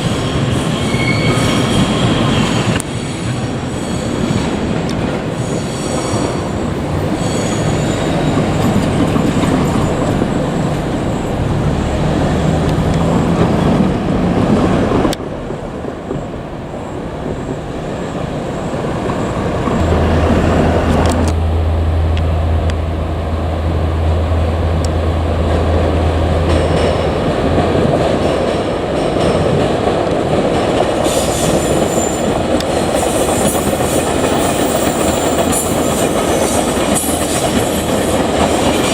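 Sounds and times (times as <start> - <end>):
train wheels on rails: 0.0 - 38.9
low hum: 19.6 - 26.8.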